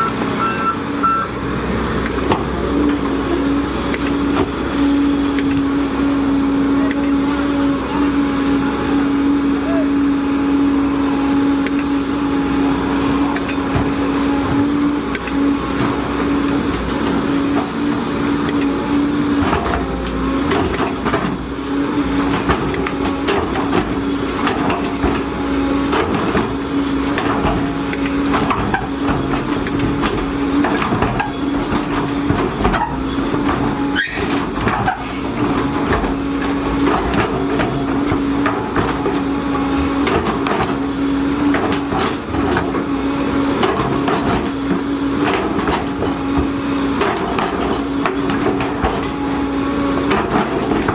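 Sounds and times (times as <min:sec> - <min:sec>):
excavator engine droning: 0:00.0 - 0:50.9
knocks and clanks: 0:13.1 - 0:50.9.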